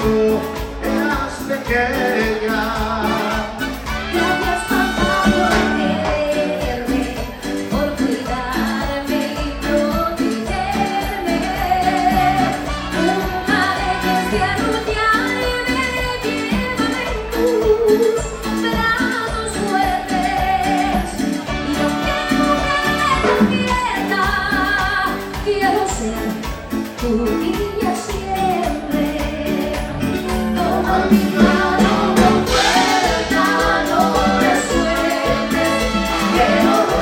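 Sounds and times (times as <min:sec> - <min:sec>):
dance orchestra playing: 0:00.0 - 0:27.4, 0:28.1 - 0:37.0.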